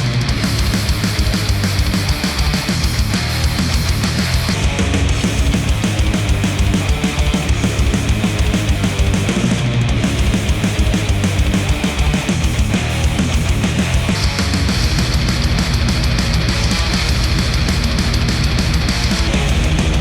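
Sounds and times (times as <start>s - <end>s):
heavy rock music: 0.0s - 20.0s.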